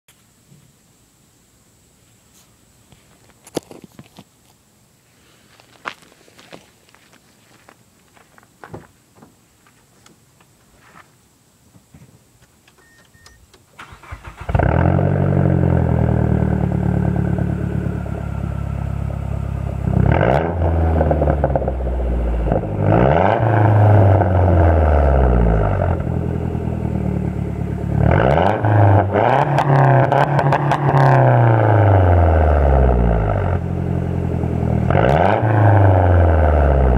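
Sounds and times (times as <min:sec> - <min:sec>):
car engine starting: 0:12.7 - 0:36.9
car engine revving and idling: 0:13.9 - 0:36.9.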